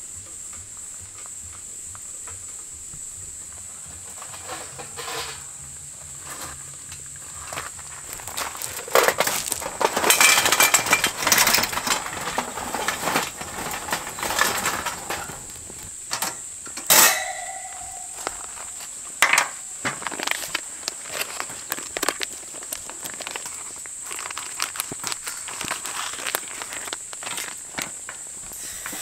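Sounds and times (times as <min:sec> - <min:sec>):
hard objects knocking and clattering: 0:07.6 - 0:27.9
sharp ringing clink: 0:16.9 - 0:18.8.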